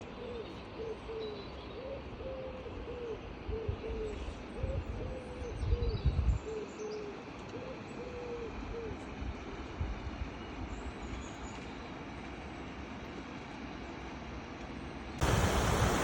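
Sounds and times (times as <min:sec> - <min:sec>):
outdoor background noise: 0:00.0 - 0:16.0
bird hooting: 0:00.1 - 0:05.6, 0:06.4 - 0:09.0.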